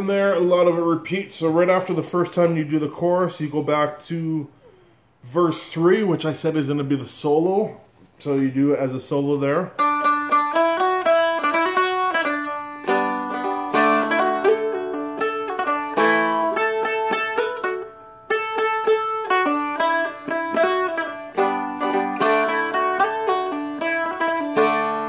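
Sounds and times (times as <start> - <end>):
flatpicked guitar melody: 9.8 - 25.0.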